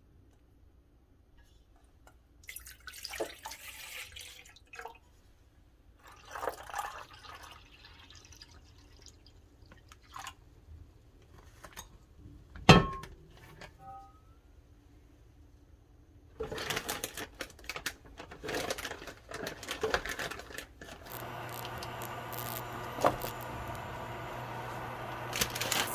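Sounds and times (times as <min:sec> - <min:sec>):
water pouring: 0:02.4 - 0:05.0, 0:06.0 - 0:10.4.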